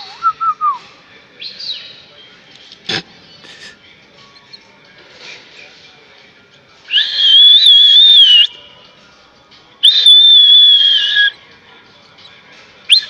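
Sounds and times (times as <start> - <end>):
long high whistles: 6.9 - 8.5, 9.8 - 11.3.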